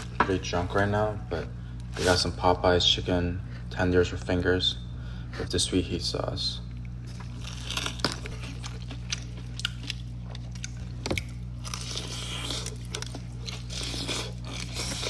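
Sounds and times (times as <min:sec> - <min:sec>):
steady low hum: 0:00.0 - 0:15.0
chewing crispy chicken: 0:06.7 - 0:15.0.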